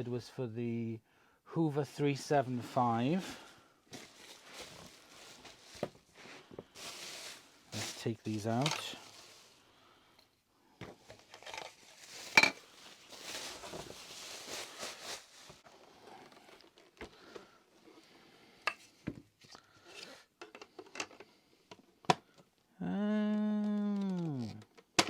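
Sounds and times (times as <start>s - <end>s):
packing paper rustling: 2.6s - 9.6s, 11.0s - 17.0s
plastic attachments clacking: 7.9s - 9.0s
person humming: 22.8s - 24.6s.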